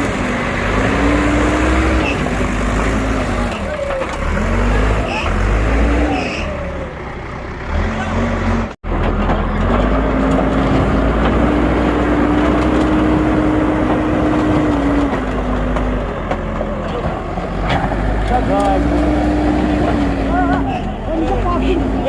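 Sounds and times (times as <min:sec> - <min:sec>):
bulldozer diesel engine revving: 0:00.0 - 0:22.0.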